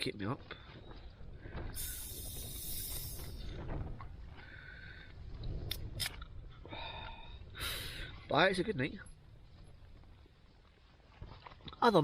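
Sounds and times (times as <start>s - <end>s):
strong wind buffeting tent: 0.7s - 11.2s.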